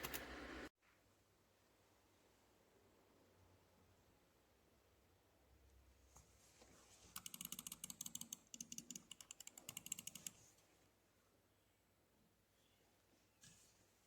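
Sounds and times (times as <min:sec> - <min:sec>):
rapid clicking of computer keys: 0:07.1 - 0:10.4.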